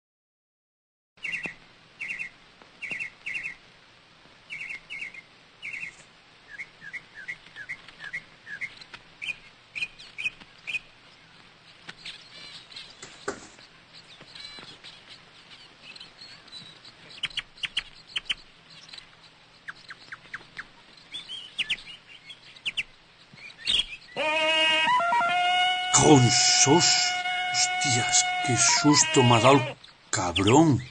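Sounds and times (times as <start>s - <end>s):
small bird chirping: 1.2s - 3.6s, 4.5s - 24.2s.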